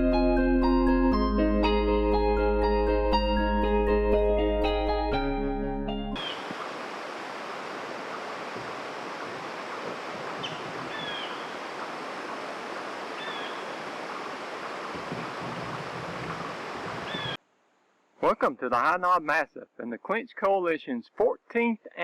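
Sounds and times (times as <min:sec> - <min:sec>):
flowing water rushing: 0:06.2 - 0:17.4.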